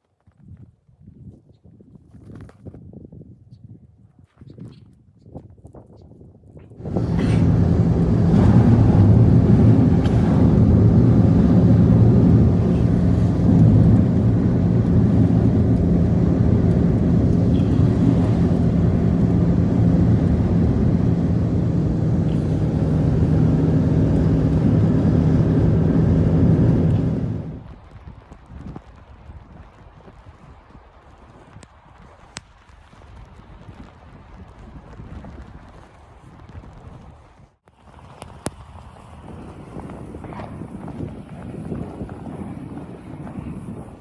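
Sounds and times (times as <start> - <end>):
engine humming: 6.8 - 27.7.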